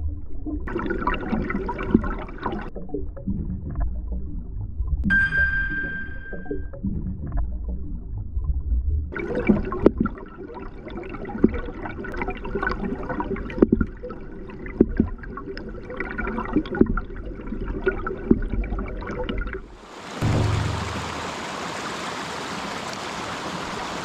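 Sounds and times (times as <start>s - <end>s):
muffled underwater gurgling: 0.0s - 4.6s, 9.1s - 19.7s
stream rushing: 19.8s - 24.0s.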